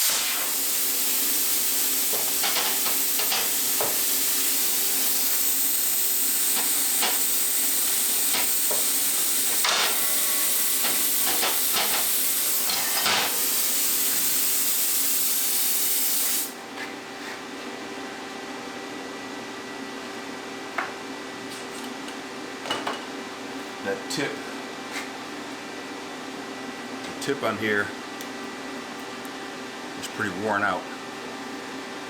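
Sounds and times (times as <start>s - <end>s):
plasma cutter hissing and crackling: 0.0s - 16.5s.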